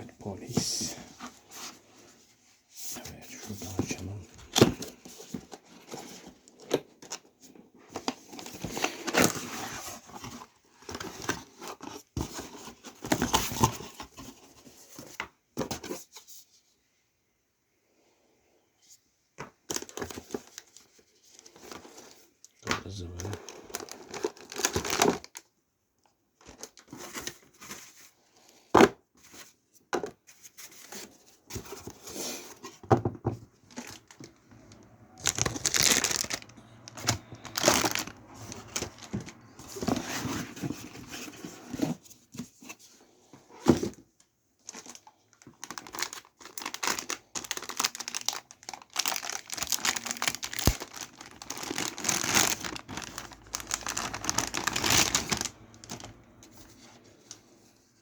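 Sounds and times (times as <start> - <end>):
plastic packaging crinkling: 22.9 - 25.4, 33.6 - 40.1, 44.6 - 57.4.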